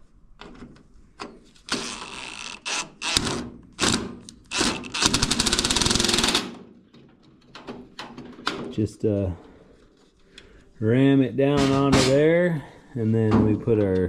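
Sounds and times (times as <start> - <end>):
cordless power driver running: 1.8 - 6.3.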